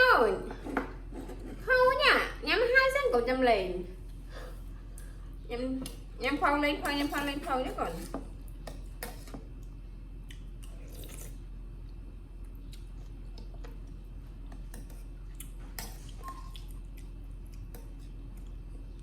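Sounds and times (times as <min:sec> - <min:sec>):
steady low hum: 0:00.0 - 0:19.0
monkeys eating: 0:10.3 - 0:19.0.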